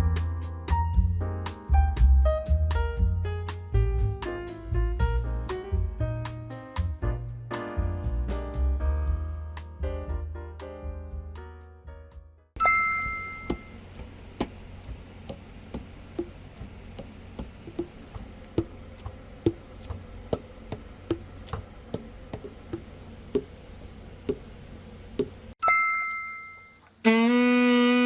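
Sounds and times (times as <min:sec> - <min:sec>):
two-tone chime: 0:12.6 - 0:13.7, 0:25.6 - 0:26.9.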